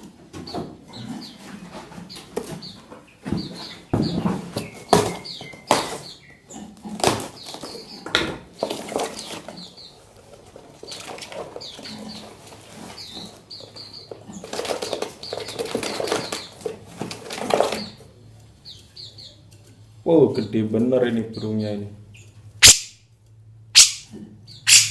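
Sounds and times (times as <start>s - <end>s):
small birds fluttering wings: 14.4s - 18.0s
short high bird chirps: 22.6s - 23.0s, 23.8s - 24.9s.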